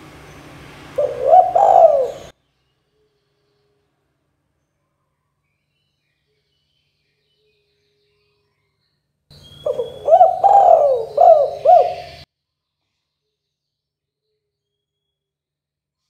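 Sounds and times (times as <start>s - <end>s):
dove cooing: 1.0s - 2.3s, 9.6s - 12.2s.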